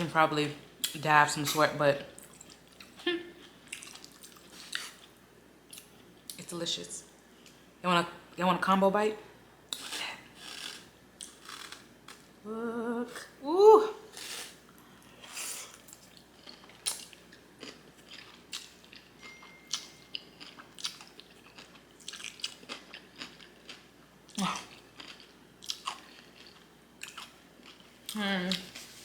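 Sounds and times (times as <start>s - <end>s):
chewing noodles: 19.7s - 23.9s, 24.6s - 27.9s.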